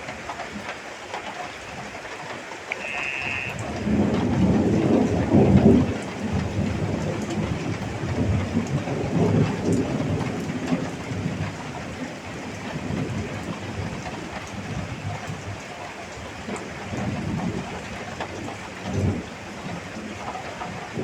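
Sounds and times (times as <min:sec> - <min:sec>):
heavy rain falling: 0:00.0 - 0:21.0
brief high tone: 0:02.7 - 0:03.6
thunder rumbling: 0:02.9 - 0:14.9.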